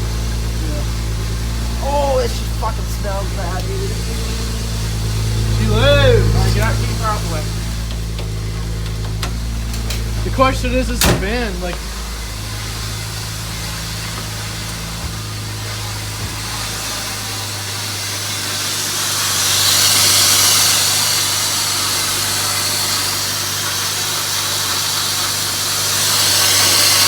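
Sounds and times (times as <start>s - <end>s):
car engine idling: 0.0s - 27.0s
rushing cooling fan: 0.0s - 27.0s.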